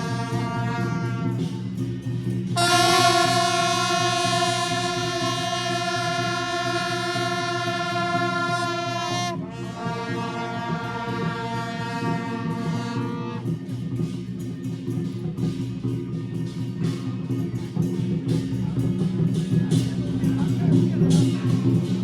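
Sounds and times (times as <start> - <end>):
brassy reedy lead instrument: 0.0 - 1.6, 2.6 - 13.7
rhythmic backing music: 0.0 - 22.0.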